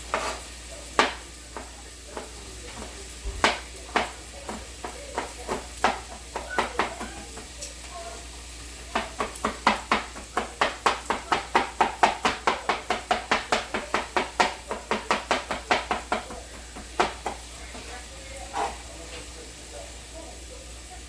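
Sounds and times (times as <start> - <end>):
knife chopping on cutting board: 1.0 - 7.6, 8.8 - 17.9.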